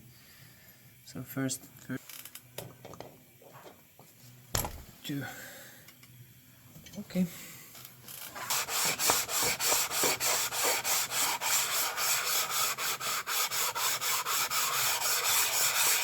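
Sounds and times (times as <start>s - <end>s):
stone rasping on metal: 8.3s - 16.0s.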